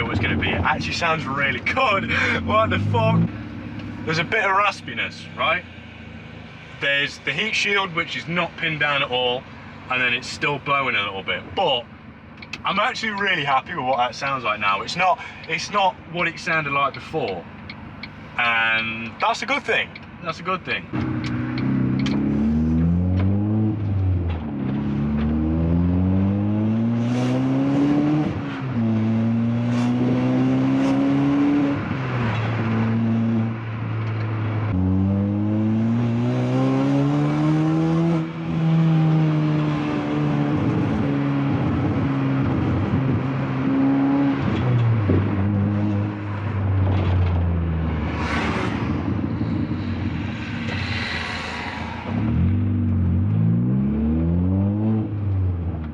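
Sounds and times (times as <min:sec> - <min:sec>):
car engine revving through gears: 0:00.2 - 0:04.3, 0:20.9 - 0:55.9.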